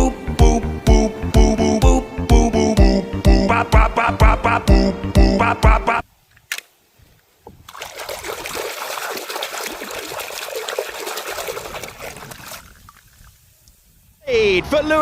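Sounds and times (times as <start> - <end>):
water trickling and splashing: 7.1 - 14.0.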